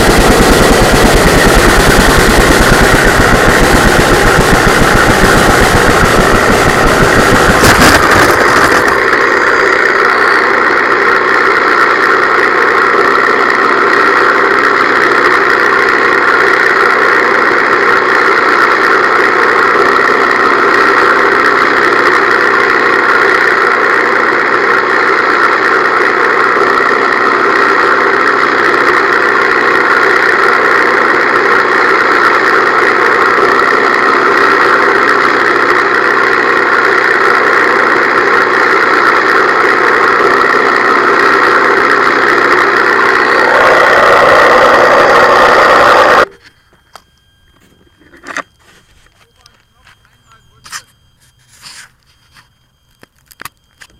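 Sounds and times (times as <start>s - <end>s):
rushing noise: 0.0s - 10.6s, 37.9s - 46.3s
model airplane motor drone: 0.0s - 47.0s.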